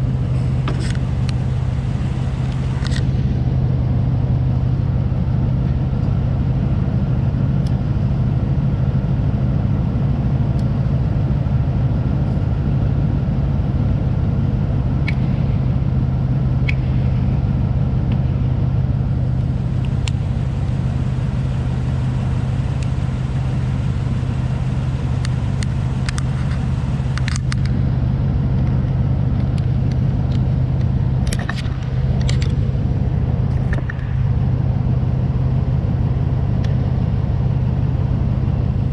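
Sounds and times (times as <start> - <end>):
car engine running: 0.0 - 38.9
sharp clicks: 25.0 - 27.8.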